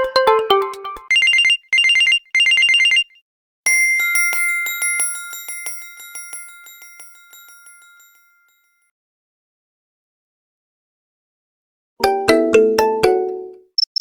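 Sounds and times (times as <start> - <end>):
melodic ringtone: 0.0 - 3.1, 12.0 - 14.0
bright chime ringtone: 0.0 - 8.9.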